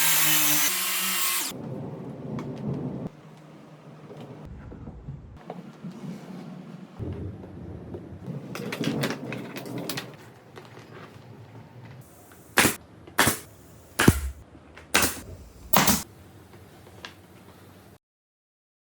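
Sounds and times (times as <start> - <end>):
sharp knocks: 12.6 - 14.4.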